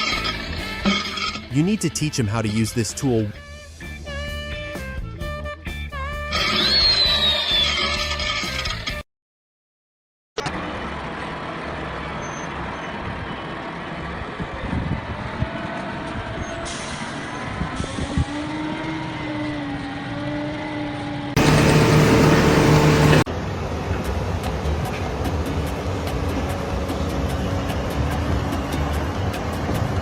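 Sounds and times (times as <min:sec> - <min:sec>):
loud burst of noise: 0:21.4 - 0:23.3
heavy engine running: 0:21.4 - 0:30.0.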